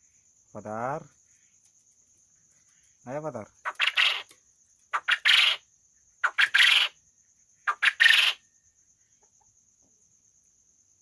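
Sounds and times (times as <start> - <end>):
quail calling: 3.6 - 7.0, 7.6 - 8.4.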